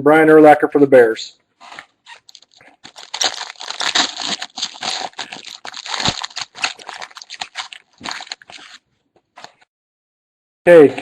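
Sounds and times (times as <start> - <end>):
wrapper tearing and crinkling: 1.6 - 8.8.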